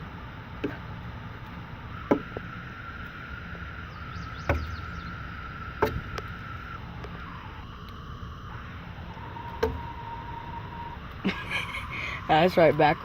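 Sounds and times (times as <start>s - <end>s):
low background rumble: 0.0s - 13.0s.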